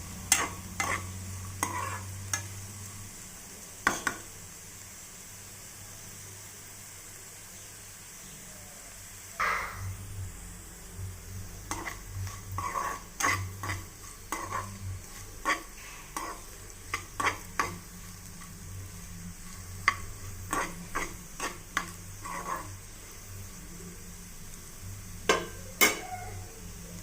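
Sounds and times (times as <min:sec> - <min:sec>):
utensil scraping a frying pan: 0:00.0 - 0:02.8, 0:11.3 - 0:23.6
sizzle of frying: 0:00.0 - 0:27.0.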